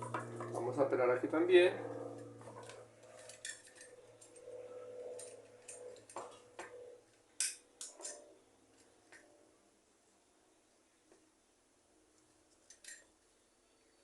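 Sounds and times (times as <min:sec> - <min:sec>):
metal tool scraping wire: 0:01.8 - 0:06.5, 0:07.4 - 0:09.0.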